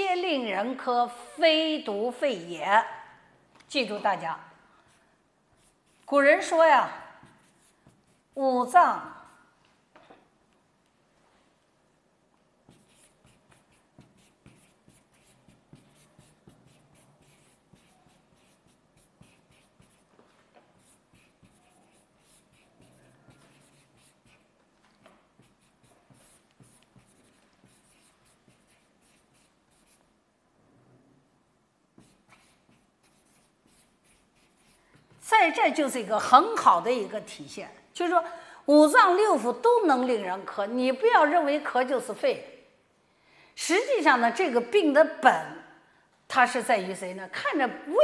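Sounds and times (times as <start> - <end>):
pen scratching while writing: 12.7 - 20.1, 20.7 - 24.4, 25.4 - 30.0, 32.0 - 35.2.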